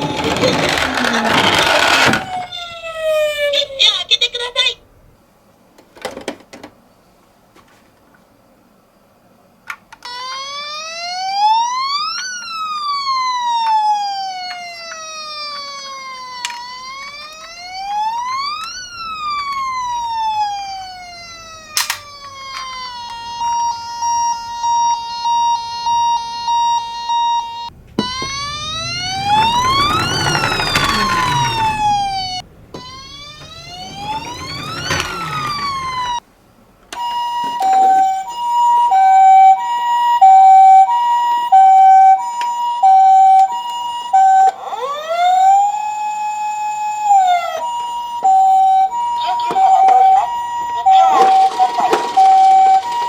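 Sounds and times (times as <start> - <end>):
toy car rolling down a slope: 0.0 - 3.6, 11.5 - 26.1, 27.7 - 36.2, 49.5 - 53.0
toy electronic siren: 0.0 - 4.0, 10.0 - 36.2, 36.9 - 53.0.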